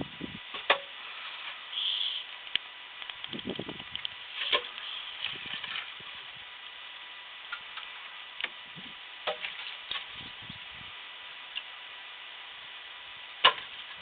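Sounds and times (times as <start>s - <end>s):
logs knocking together: 9.2s - 10.1s, 13.4s - 14.0s.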